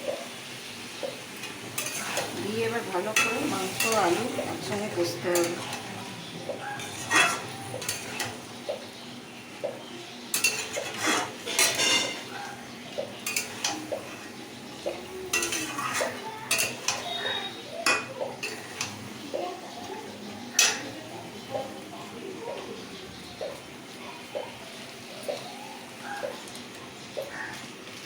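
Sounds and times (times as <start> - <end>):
faint sizzle: 0.0 - 28.0
spatula scraping a pan: 1.7 - 5.9, 6.6 - 8.4, 10.3 - 19.2
spatula clinking against pan: 1.8 - 2.4, 3.0 - 4.5, 6.6 - 8.4, 10.3 - 19.0, 20.5 - 21.0.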